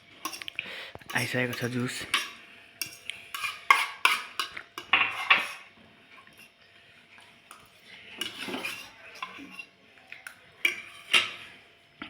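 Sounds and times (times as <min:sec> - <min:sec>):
spoon clinking against bowl: 0:10.6 - 0:11.4.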